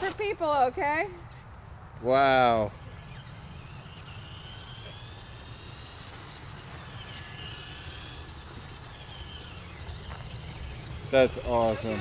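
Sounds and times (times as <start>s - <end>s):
toy car motor whining: 2.2s - 12.0s.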